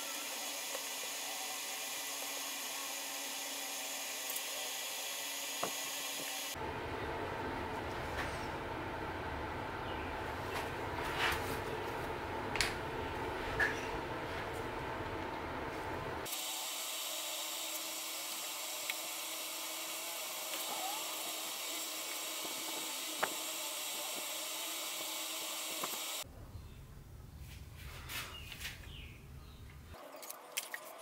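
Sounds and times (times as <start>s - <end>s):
low rumbling noise: 6.6s - 16.3s
electric power tool whining: 16.2s - 26.2s.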